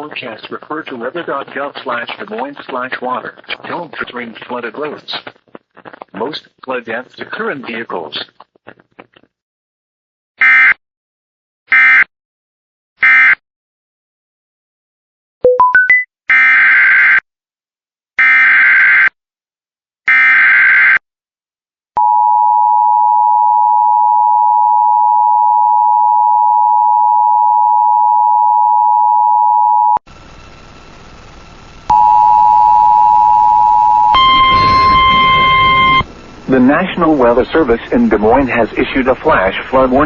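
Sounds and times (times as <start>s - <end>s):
screeching digital header bursts: 30.2s - 40.0s
rising beeps: 31.9s - 36.1s
two-tone attention signal: 31.9s - 36.1s
higher steady tone: 31.9s - 36.7s
low hiss: 36.1s - 40.0s.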